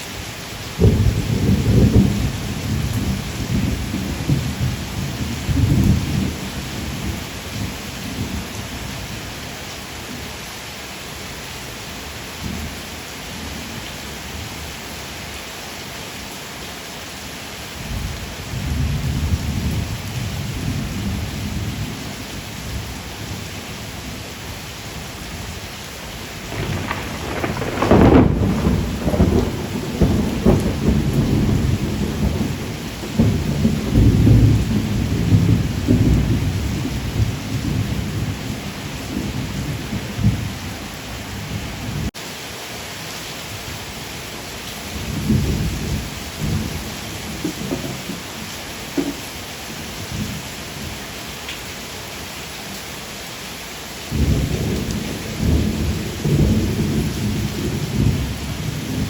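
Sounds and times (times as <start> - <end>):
steady rain: 0.0 - 59.0
thunder rumbling: 0.8 - 8.4, 26.4 - 42.1, 44.9 - 48.4, 54.1 - 59.0
loud thunder crack: 26.4 - 38.4.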